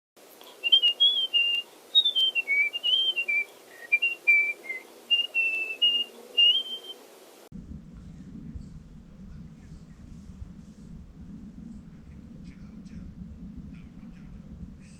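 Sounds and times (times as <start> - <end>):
low steady hum: 0.2 - 14.9
person whistling a tune: 0.6 - 6.9.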